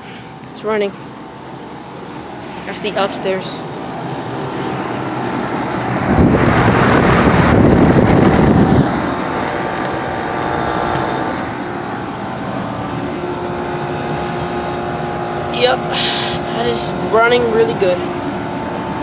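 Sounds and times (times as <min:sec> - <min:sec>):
compressor hum: 0:00.0 - 0:19.0
condenser fan rushing air: 0:00.0 - 0:19.0.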